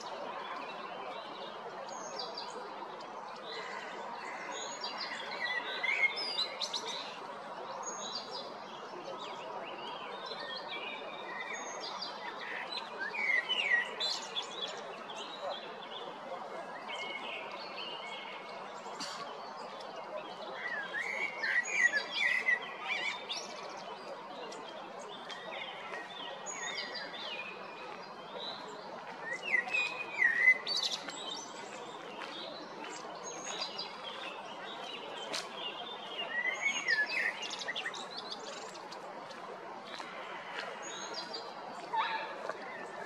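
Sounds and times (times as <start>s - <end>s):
background noise: 0.0s - 43.0s
blackbird singing: 29.2s - 31.4s.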